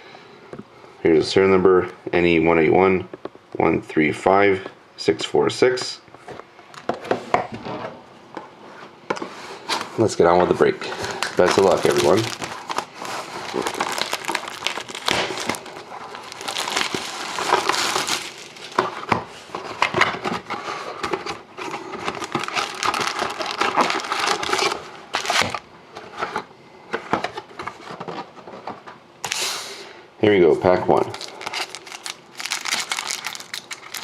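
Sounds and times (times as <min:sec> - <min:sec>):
plastic shrink wrap crinkling: 0:10.8 - 0:19.8, 0:21.6 - 0:25.6, 0:31.0 - 0:34.0.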